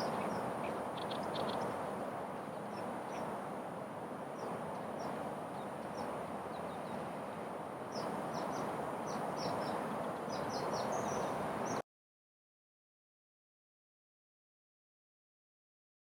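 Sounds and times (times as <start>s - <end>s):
small birds chirping: 0.0s - 3.6s, 4.2s - 11.8s
outdoor background hiss: 0.0s - 11.8s.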